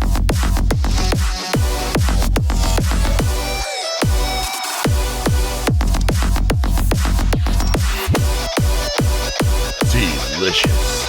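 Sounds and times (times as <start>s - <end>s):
electronic music with kick drums: 0.0s - 11.0s
wobbling bass line: 5.0s - 11.0s.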